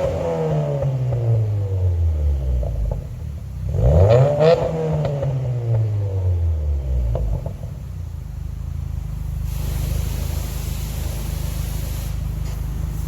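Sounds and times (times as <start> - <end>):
car engine idling: 0.0 - 13.0
steady hiss: 9.1 - 13.0.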